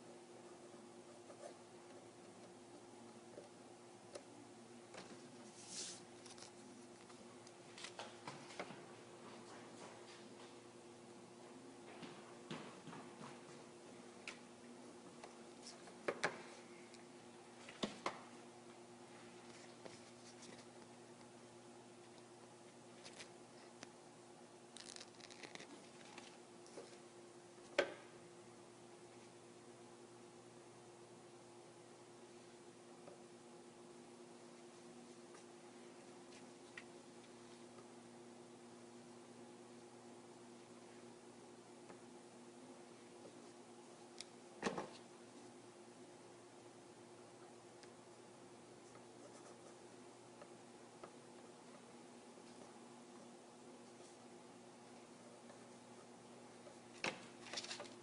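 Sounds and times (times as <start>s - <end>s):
faint steady hum: 0.0s - 58.0s
adhesive strips crinkling: 24.8s - 26.4s.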